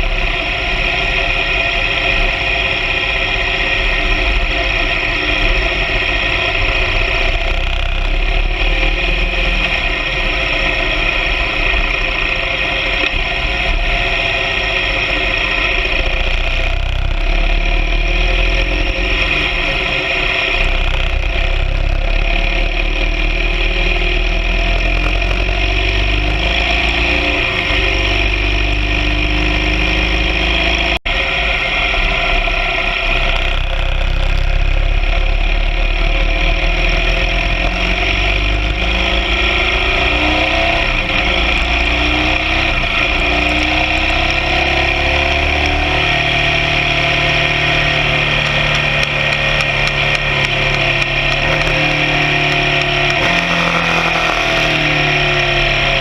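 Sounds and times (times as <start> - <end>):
motorcycle engine running: 0.0 - 56.0.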